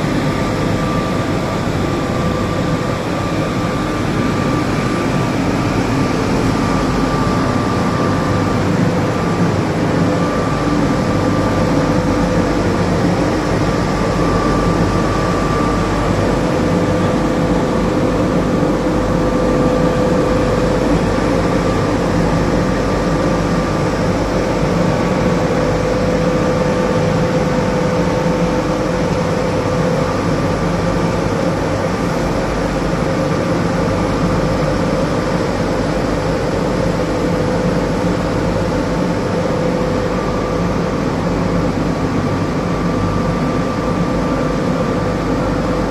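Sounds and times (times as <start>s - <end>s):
higher intermittent whine: 0.0s - 45.9s
machine rumble and hiss: 0.0s - 45.9s
steady machine whine: 0.0s - 45.9s.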